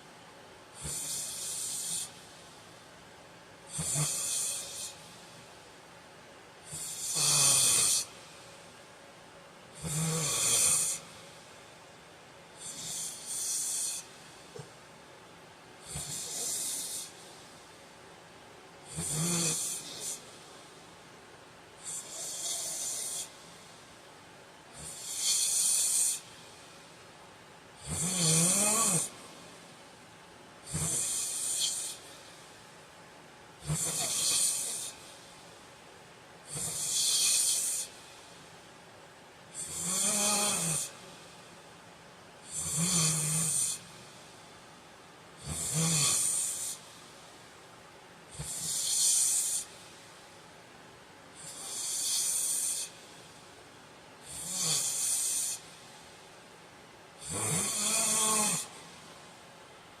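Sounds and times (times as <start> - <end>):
man snoring: 0.8 - 2.2, 3.7 - 5.0, 6.7 - 8.2, 9.8 - 11.1, 12.6 - 14.7, 15.8 - 17.2, 18.9 - 20.2, 21.8 - 23.3, 24.8 - 26.3, 27.8 - 29.2, 30.7 - 32.0, 33.6 - 35.0, 36.5 - 37.9, 39.6 - 41.0, 42.4 - 43.8, 45.4 - 46.9, 48.4 - 49.7, 51.4 - 53.0, 54.2 - 55.7, 57.2 - 58.8.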